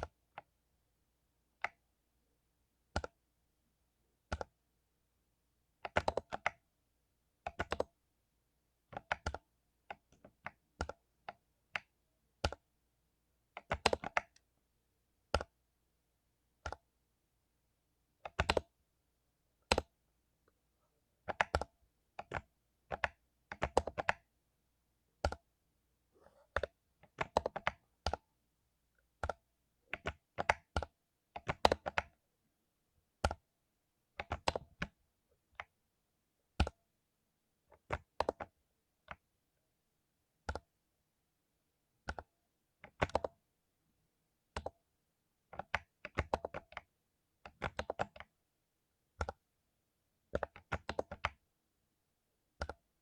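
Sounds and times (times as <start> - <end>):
typing on mechanical keyboard: 5.8 - 6.6, 7.4 - 7.9, 8.9 - 12.6, 13.6 - 14.4, 18.2 - 18.7, 21.3 - 24.3, 26.3 - 28.2, 29.2 - 32.2, 34.2 - 35.0, 37.7 - 38.5, 42.1 - 43.4, 44.6 - 44.8, 45.5 - 48.3, 49.2 - 49.4, 50.3 - 51.4.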